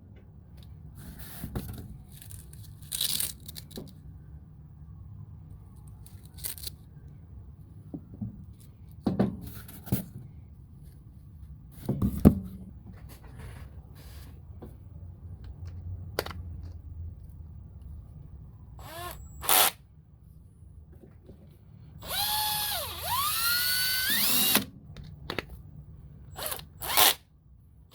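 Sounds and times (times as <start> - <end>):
plastic parts clicking and tapping: 15.4 - 16.8.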